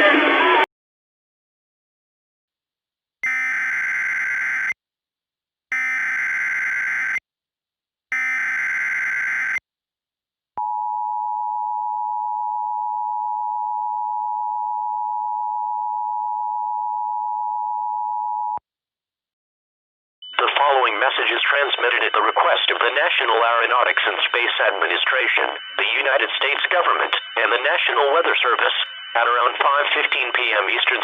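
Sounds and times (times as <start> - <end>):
two-tone attention signal: 20.3 - 31.0.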